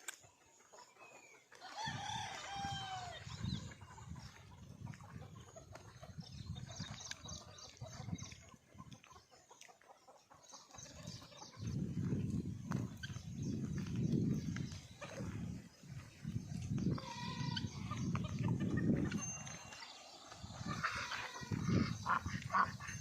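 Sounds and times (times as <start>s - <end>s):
chickens clucking: 0.0s - 23.0s
chicken squawks: 20.6s - 23.0s.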